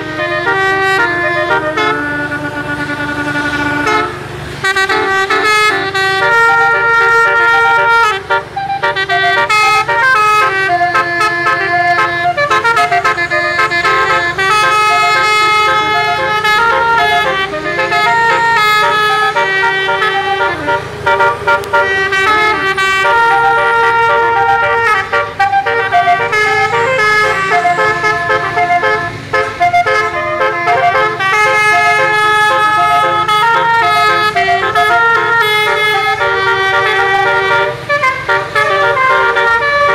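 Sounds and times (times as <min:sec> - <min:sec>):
musical air horn melody: 0:00.0 - 0:39.9.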